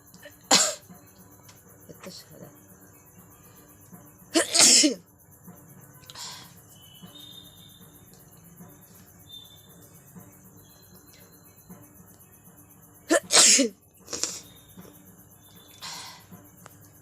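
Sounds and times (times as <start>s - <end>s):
faint high chirps: 5.1s - 17.0s.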